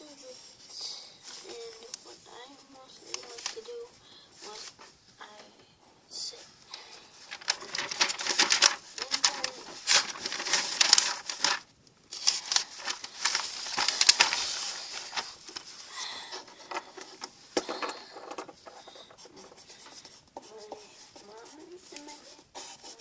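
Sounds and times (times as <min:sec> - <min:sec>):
pen scratching on a surface: 0:18.8 - 0:23.0.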